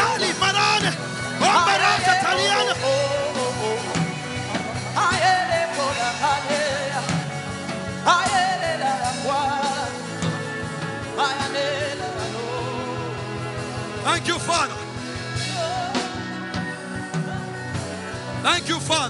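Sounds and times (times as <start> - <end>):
person singing: 0.0 - 7.4, 8.0 - 10.3, 11.0 - 13.9
slow worship music keyboard: 0.0 - 19.0.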